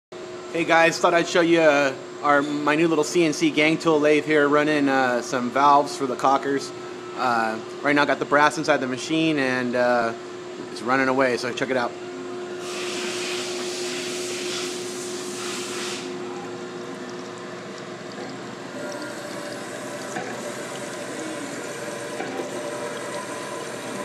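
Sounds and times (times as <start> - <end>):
steady machine hum: 0.2 - 24.0
coolant spray hissing: 12.6 - 16.2
lathe running with faint ticks: 16.9 - 21.0.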